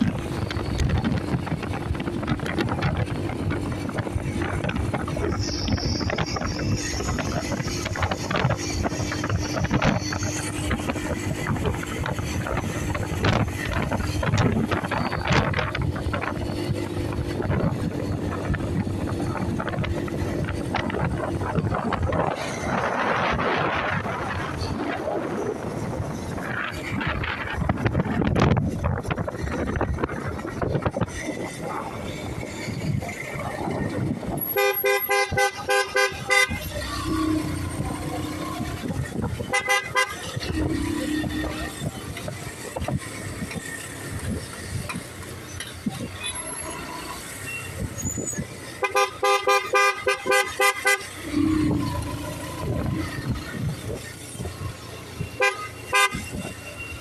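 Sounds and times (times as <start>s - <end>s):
road and wind noise: 0.0s - 57.0s
vehicle horn beeping: 34.5s - 36.8s, 39.5s - 40.3s, 48.8s - 51.2s, 55.4s - 57.0s.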